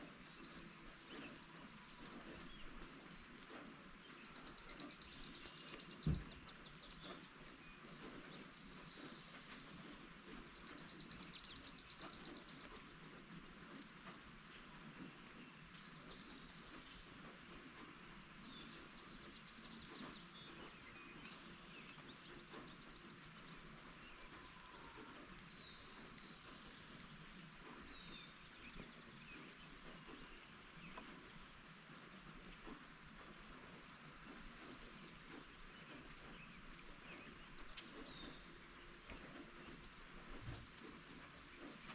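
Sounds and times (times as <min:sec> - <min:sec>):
faint rain: 0:00.0 - 0:41.9
drips ticking: 0:18.3 - 0:41.9.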